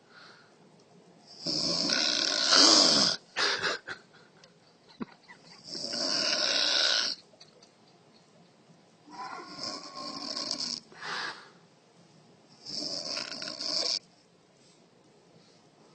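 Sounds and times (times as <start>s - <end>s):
woman snoring: 1.4s - 3.2s, 5.6s - 7.2s, 9.4s - 11.0s, 12.6s - 14.0s.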